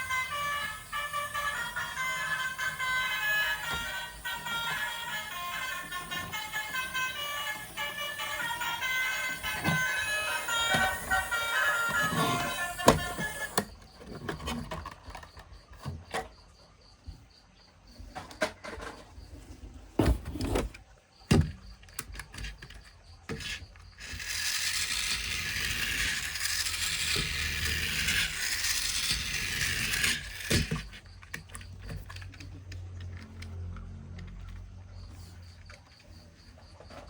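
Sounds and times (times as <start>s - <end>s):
high-pitched whirring: 0.0s - 13.8s, 24.0s - 30.9s
plastic toy vehicles clicking: 0.0s - 16.3s, 20.7s - 37.0s.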